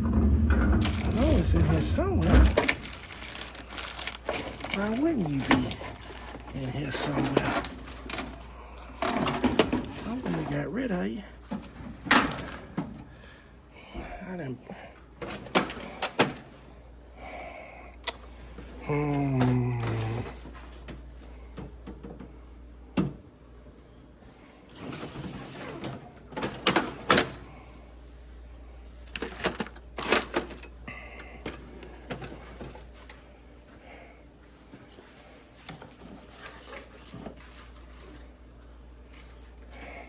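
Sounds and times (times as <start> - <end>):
steady low hum: 0.0 - 25.3
tools rummaged through by hand: 0.1 - 10.9, 11.5 - 12.8, 18.6 - 22.2, 29.0 - 33.2, 34.6 - 40.0.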